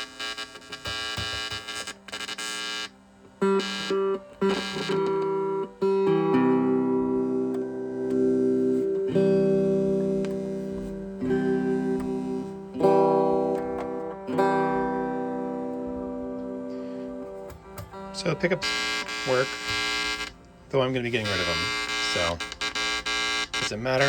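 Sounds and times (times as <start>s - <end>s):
electric guitar through amplifier: 0.0s - 24.0s.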